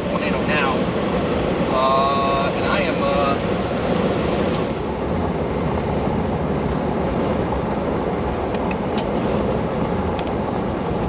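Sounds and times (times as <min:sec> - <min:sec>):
vehicle road rumble: 0:00.0 - 0:11.0.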